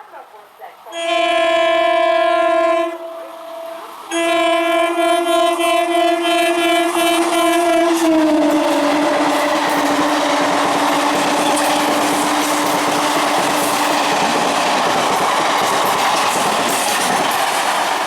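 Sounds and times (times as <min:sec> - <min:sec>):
train horn blasts: 0:00.9 - 0:14.7
train rumbling past: 0:00.9 - 0:18.0.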